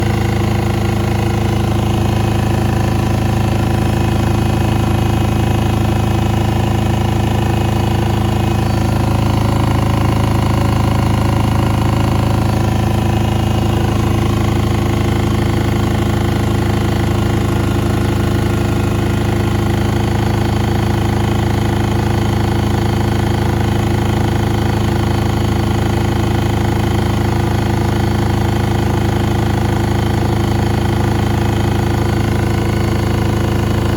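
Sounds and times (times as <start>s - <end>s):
washing machine motor and drum hum: 0.0s - 33.9s.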